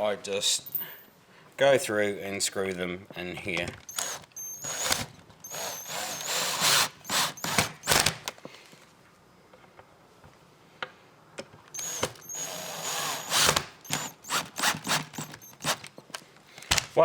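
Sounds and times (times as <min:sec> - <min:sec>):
drill click: 0:03.8 - 0:08.4, 0:11.8 - 0:16.9
cordless drill motor whine: 0:03.9 - 0:08.1, 0:11.8 - 0:16.2.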